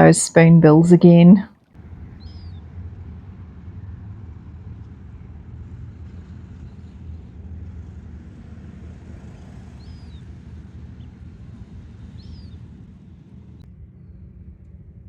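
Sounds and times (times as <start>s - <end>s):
outdoor low rumble with hiss: 0.0s - 15.0s
small bird chirping: 2.2s - 2.6s, 9.8s - 10.2s, 12.0s - 12.7s.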